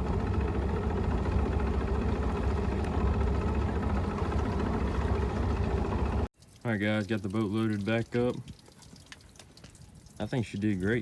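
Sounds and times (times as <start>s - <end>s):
outboard motor idling: 0.0s - 6.3s.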